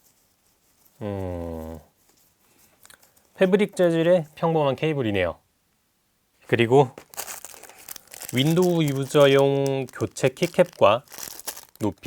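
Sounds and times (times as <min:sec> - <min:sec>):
man humming low: 0:01.0 - 0:01.9.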